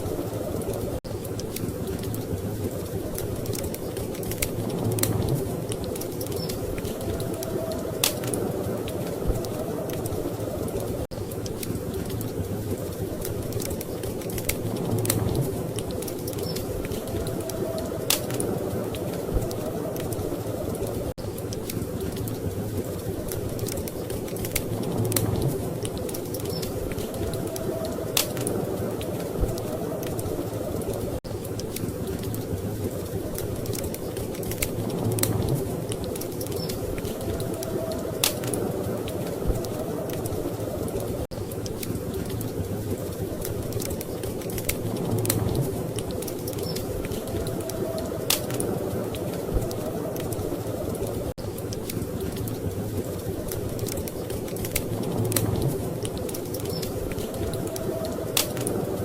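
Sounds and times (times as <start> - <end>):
storm wind rumble: 0.0 - 59.0
wood fire crackling and popping: 0.0 - 59.0.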